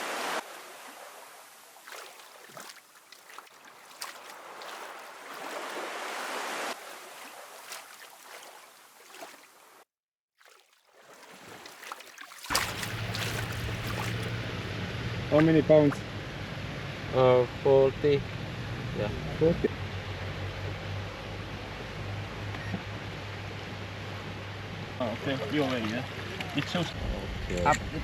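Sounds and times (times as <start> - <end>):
water splashing and lapping: 1.6 - 14.7.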